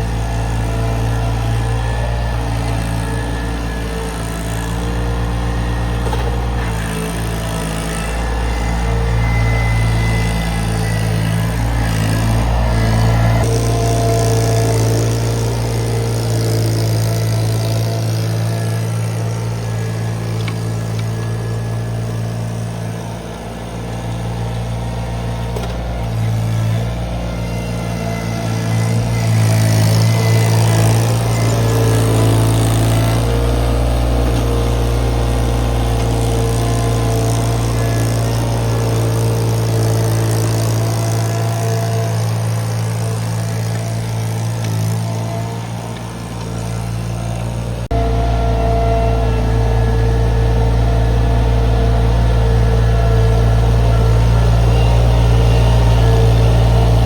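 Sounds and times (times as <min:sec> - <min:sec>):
skid steer engine running: 0:00.0 - 0:57.0.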